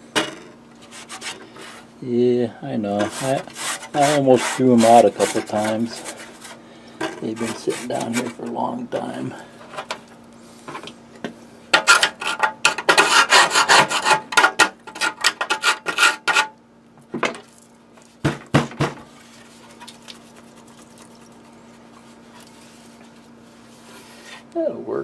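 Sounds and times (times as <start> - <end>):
knocks on metal case: 18.2 - 19.0.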